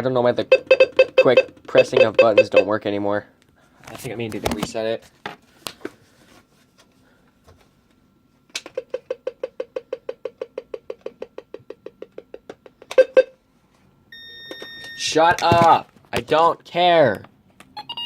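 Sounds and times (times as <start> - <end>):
steady high reminder beep: 0.5 - 2.7.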